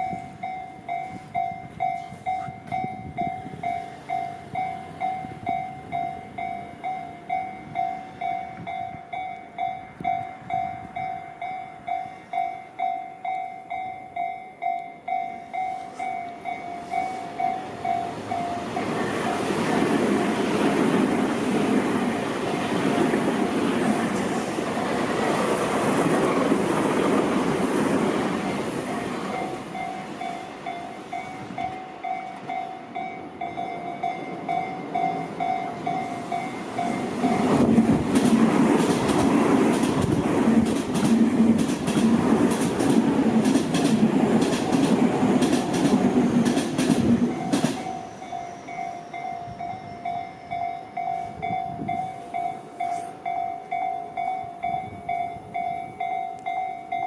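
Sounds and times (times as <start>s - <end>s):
level crossing alarm bell: 0.0s - 19.6s, 28.4s - 37.7s, 47.3s - 57.0s
electric train passing: 0.0s - 57.0s
train wheels clacking on rails: 0.0s - 57.0s.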